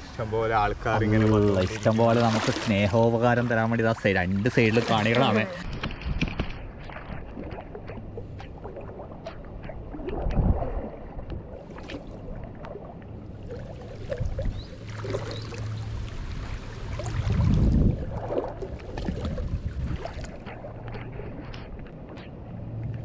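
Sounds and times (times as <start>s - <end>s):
feet wading through water: 1.0s - 23.0s
wind on microphone: 5.6s - 11.5s, 14.0s - 14.7s, 16.2s - 22.8s.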